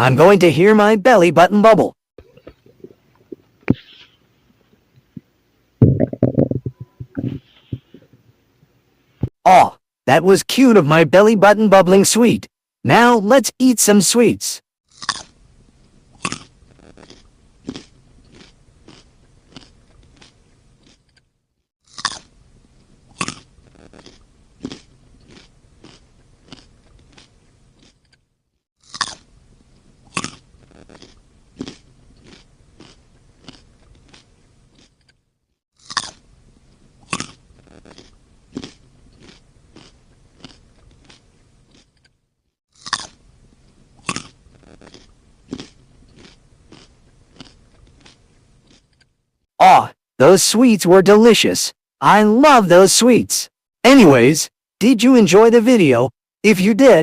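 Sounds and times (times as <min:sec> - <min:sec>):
crunchy biting of sweets: 0:14.9 - 0:49.2.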